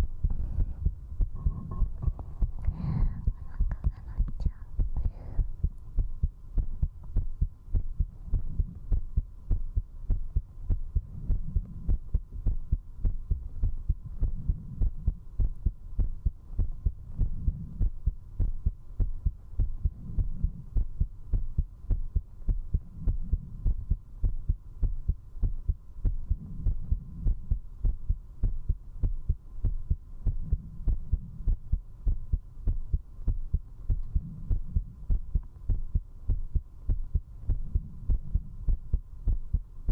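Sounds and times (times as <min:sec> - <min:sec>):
faint steady hum: 0:00.0 - 0:39.9
fast heartbeat: 0:00.0 - 0:39.9.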